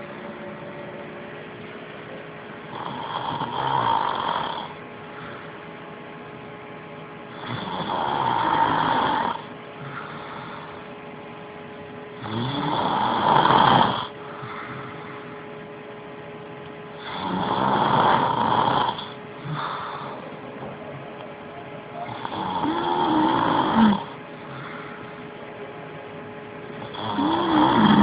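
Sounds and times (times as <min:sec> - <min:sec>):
man snoring: 0:02.7 - 0:04.8, 0:07.3 - 0:10.7, 0:12.2 - 0:15.1, 0:17.0 - 0:20.2, 0:22.1 - 0:25.0, 0:26.8 - 0:28.0
quiet breathing: 0:04.6 - 0:05.8, 0:09.8 - 0:11.0, 0:14.1 - 0:15.5, 0:18.9 - 0:20.6, 0:22.3 - 0:25.5.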